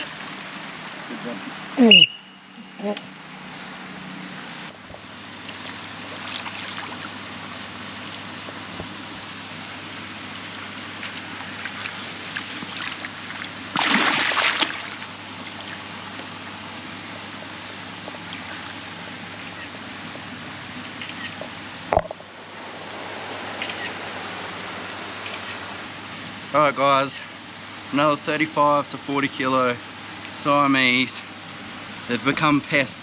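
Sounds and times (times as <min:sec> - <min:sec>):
water splashing and trickling: 0:05.4 - 0:07.2, 0:11.0 - 0:15.8
loud splash: 0:13.7 - 0:15.0.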